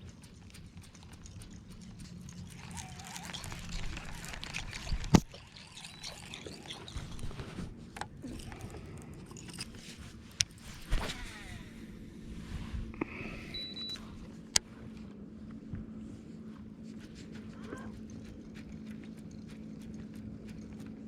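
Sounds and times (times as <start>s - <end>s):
small clicks: 0.0s - 7.4s.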